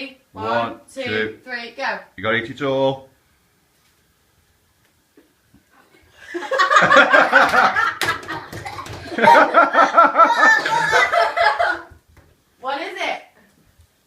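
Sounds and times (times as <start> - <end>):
person laughing: 6.3 - 11.9.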